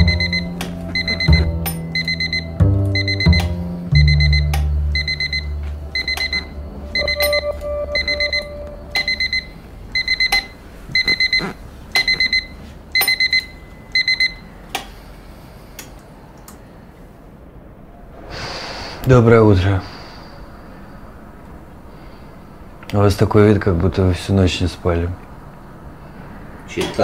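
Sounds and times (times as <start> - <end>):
alarm clock beeping: 0.0 - 14.5.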